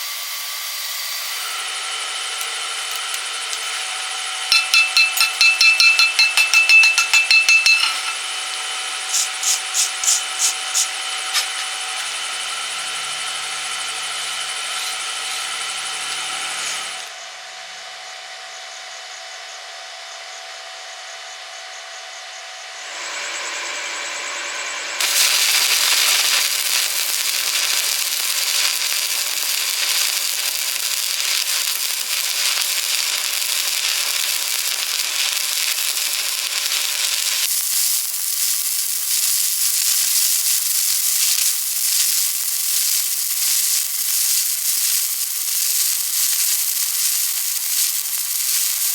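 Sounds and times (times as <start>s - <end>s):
welding arc crackling: 0.0s - 17.1s, 25.0s - 48.9s
rapid tool taps: 4.5s - 8.1s.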